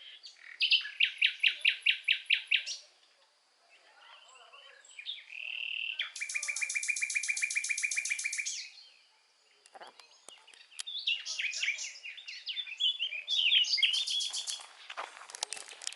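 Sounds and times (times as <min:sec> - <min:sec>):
fast bird trill: 0:05.3 - 0:08.7
songbird high whistle: 0:05.6 - 0:08.8
bird chirps and clicks: 0:06.0 - 0:08.6, 0:09.6 - 0:11.7, 0:13.8 - 0:15.9.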